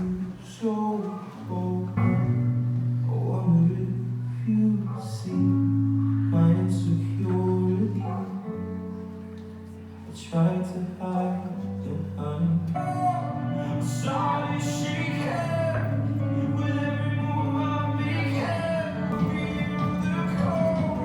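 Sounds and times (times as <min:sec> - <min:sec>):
guitar: 0:00.0 - 0:21.0
held bass notes: 0:00.0 - 0:21.0
person singing: 0:09.9 - 0:21.0.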